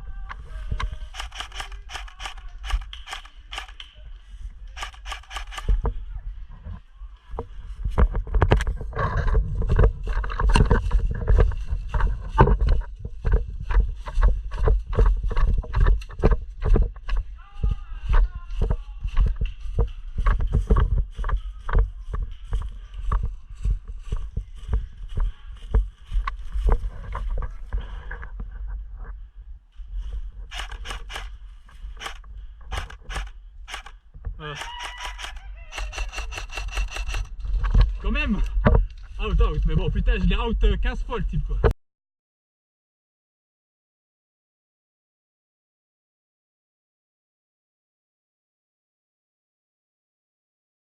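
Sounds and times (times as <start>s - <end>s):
footsteps jogging on rough ground: 0.4s - 6.0s, 7.4s - 40.0s
gear rustling: 0.9s - 3.8s, 4.7s - 5.8s, 29.8s - 38.4s
airsoft rifle shots: 1.2s - 3.8s, 4.8s - 5.8s, 30.5s - 31.3s, 32.0s - 33.9s, 34.6s - 37.3s.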